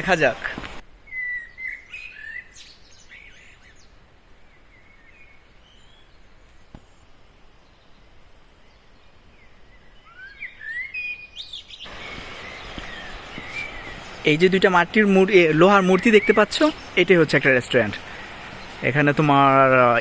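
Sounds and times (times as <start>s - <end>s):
faint outdoor hiss: 0.0s - 20.0s
small birds chirping: 0.0s - 20.0s.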